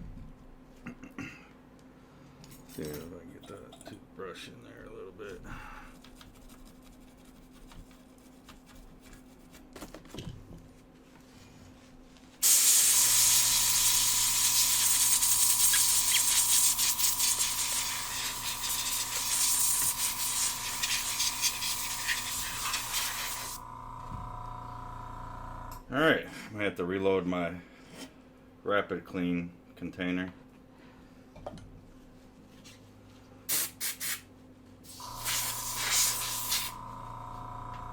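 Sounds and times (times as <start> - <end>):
aerosol cleaner spraying hiss: 12.4 - 23.6, 34.9 - 36.8.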